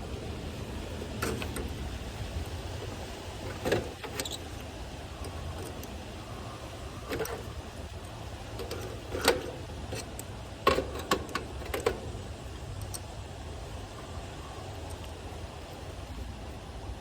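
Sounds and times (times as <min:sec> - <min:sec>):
steady low rumble: 0:00.0 - 0:17.0
hardware clicks and knocks: 0:01.0 - 0:01.9, 0:02.8 - 0:06.0, 0:07.0 - 0:13.1.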